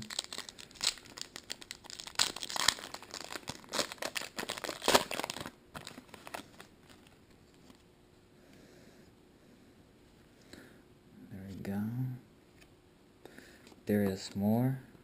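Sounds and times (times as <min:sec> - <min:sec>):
foil wrapper crinkling: 0:00.0 - 0:07.7.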